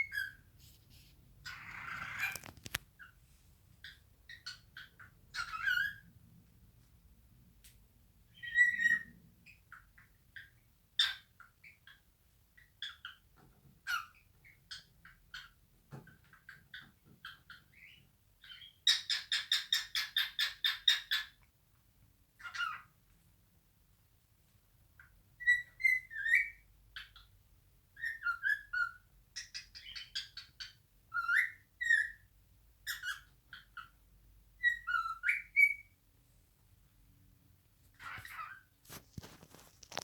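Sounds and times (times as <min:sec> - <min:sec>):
cockatiel chirping and whistling: 0:00.0 - 0:00.4, 0:01.4 - 0:02.5, 0:03.8 - 0:06.1, 0:08.3 - 0:09.8, 0:25.4 - 0:27.3, 0:28.0 - 0:34.0, 0:34.6 - 0:36.0, 0:38.0 - 0:38.6.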